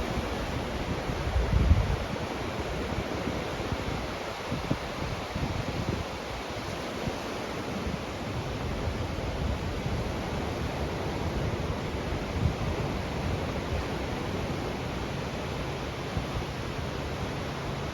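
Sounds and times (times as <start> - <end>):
wind buffeting microphone: 0.1 - 2.2.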